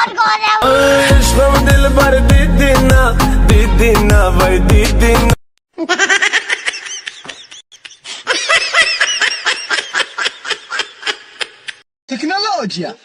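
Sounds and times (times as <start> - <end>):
high-pitched snickering giggle: 5.8 - 11.8.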